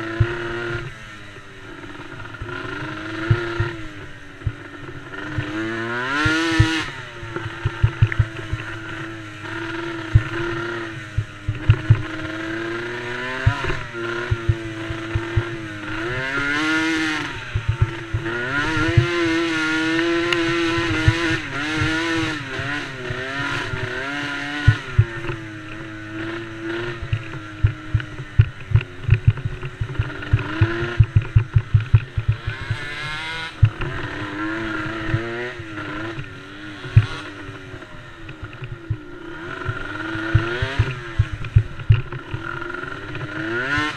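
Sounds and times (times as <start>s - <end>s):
small atv engine revving: 0.0s - 43.9s
short low thumps: 27.0s - 32.9s.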